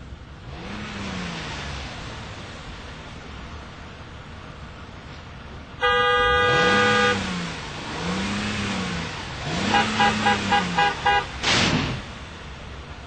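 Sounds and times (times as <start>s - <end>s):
car horn blast: 5.8s - 7.3s, 9.6s - 11.4s.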